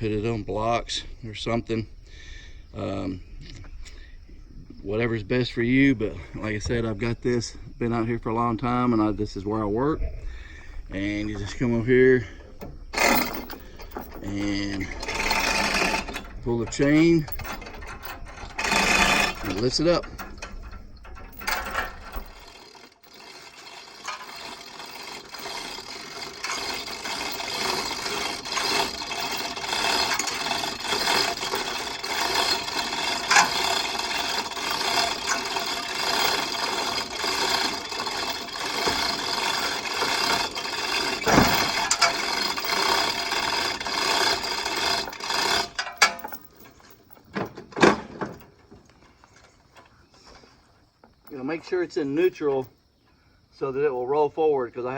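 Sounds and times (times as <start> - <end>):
chain rattling through hoist: 10.8 - 48.6.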